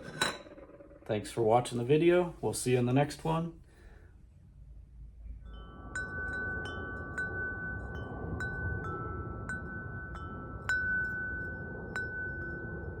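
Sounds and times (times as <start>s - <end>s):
wind chime ringing: 5.4s - 13.0s.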